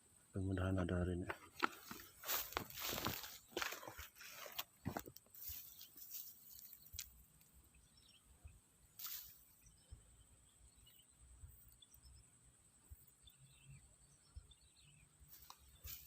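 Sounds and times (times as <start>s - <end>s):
soft rustle: 1.7s - 7.2s, 9.0s - 9.6s, 15.3s - 16.0s
faint bird chirps: 1.8s - 16.0s
high insect drone: 1.8s - 16.0s.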